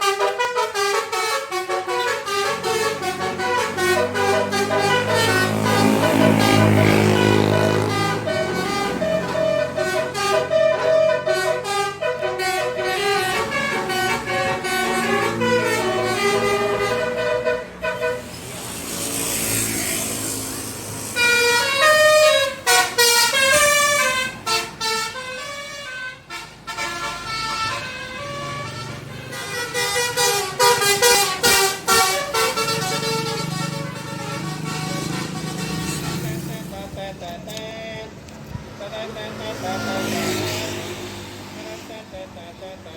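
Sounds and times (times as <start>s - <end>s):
multi-tone bus air horns: 0.0s - 42.9s
low engine rumble: 27.3s - 39.8s.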